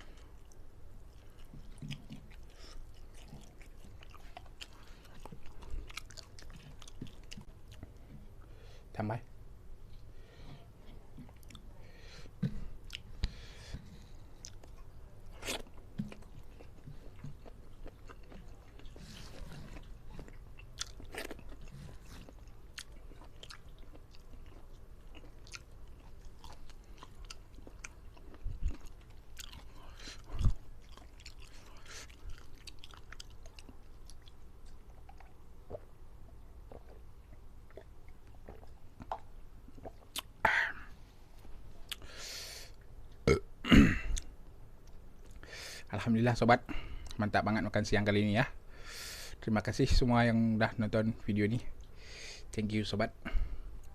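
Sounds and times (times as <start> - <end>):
wet chewing: 0.0 - 8.4, 12.4 - 40.4
lip smacks: 41.9 - 42.1.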